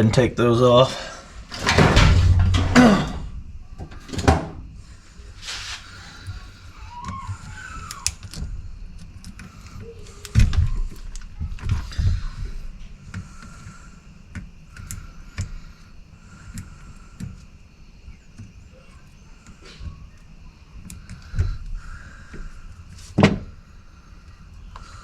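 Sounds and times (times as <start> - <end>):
heavy thump: 1.5 - 4.6.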